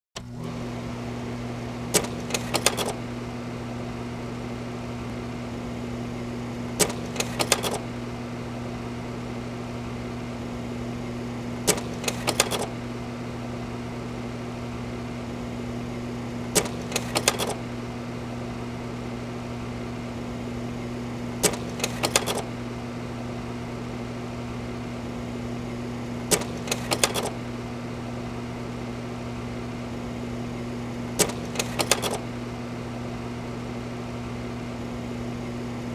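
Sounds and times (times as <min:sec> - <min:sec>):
projector fan motor hum: 0:00.2 - 0:35.9
slide mechanism clacking: 0:06.8 - 0:07.8, 0:11.7 - 0:12.7, 0:16.6 - 0:17.6, 0:21.4 - 0:22.5, 0:26.3 - 0:27.4, 0:31.2 - 0:32.2.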